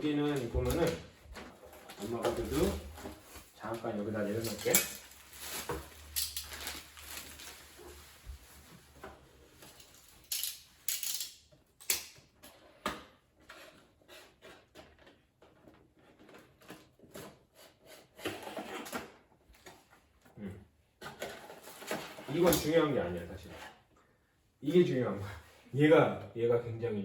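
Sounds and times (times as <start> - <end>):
packaging rustling: 0.0 - 10.3.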